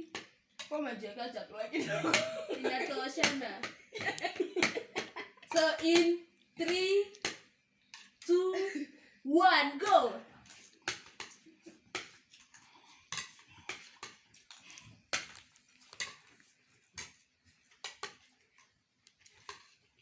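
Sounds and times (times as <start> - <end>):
cutlery clinking on plates: 1.8 - 5.8, 10.5 - 18.7.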